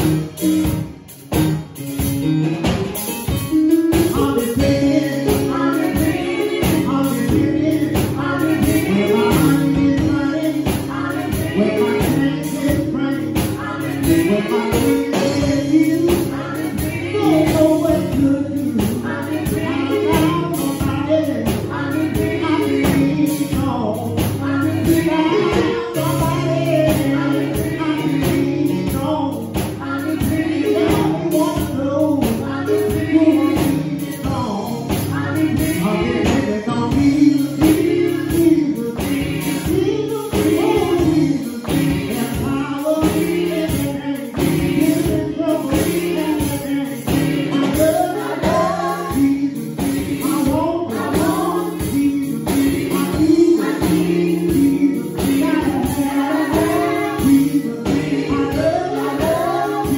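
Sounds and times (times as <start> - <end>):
choir singing gospel music: 0.0 - 59.9
steady beat: 0.0 - 59.9.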